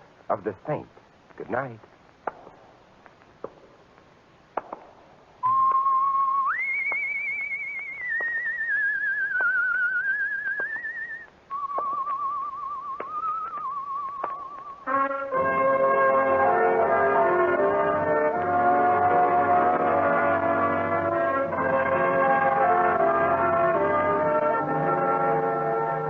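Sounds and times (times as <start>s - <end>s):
faint clicks: 0.9s - 4.9s
person whistling a melody: 5.4s - 14.8s.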